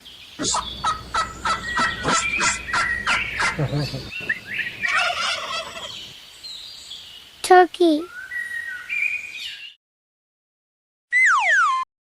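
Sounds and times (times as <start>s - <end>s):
turkey gobbling: 0.4s - 6.1s.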